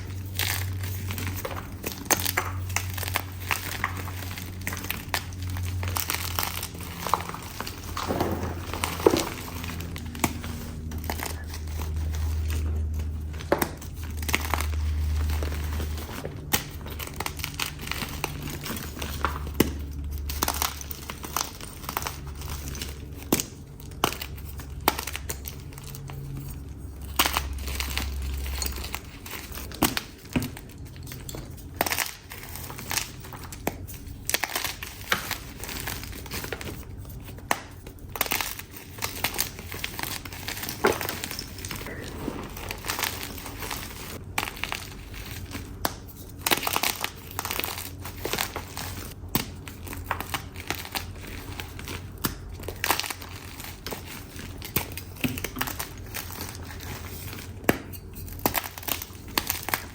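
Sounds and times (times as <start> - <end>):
chalk crushing crackles: 0.0 - 59.9
low rumble: 3.4 - 16.4, 41.0 - 44.2.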